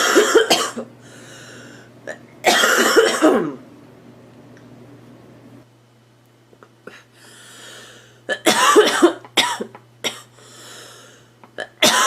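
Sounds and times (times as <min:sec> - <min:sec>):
girl coughing: 0:00.0 - 0:00.9, 0:02.1 - 0:03.6, 0:08.3 - 0:10.3, 0:11.6 - 0:12.0
steady low hum: 0:00.0 - 0:12.0
girl breathing in: 0:01.0 - 0:01.9, 0:07.2 - 0:08.2, 0:10.4 - 0:11.3.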